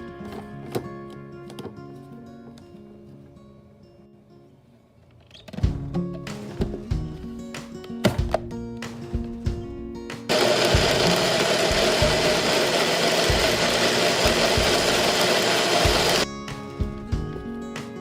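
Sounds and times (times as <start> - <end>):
electric blender whirring: 10.3 - 16.2.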